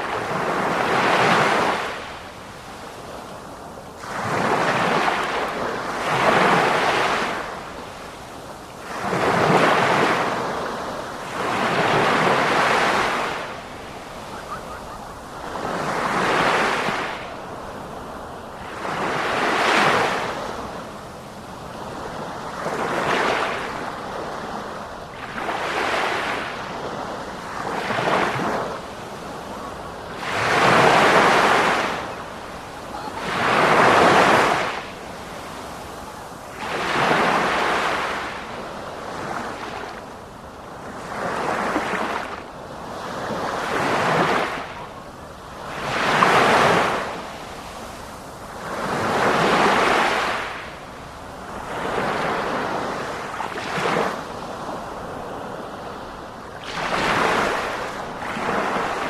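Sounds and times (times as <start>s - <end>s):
sea waves: 0.0s - 59.0s.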